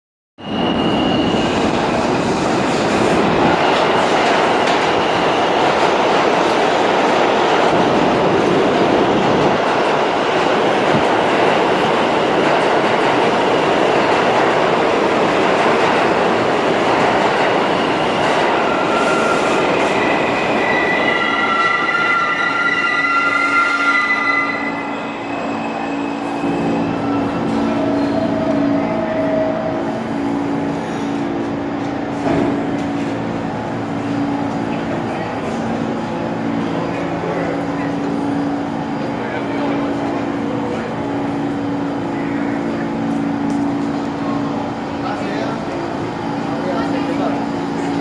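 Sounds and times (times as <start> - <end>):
high squeal: 0.4 - 1.6, 18.5 - 28.9
subway train wheels rumbling on rail: 0.4 - 48.0.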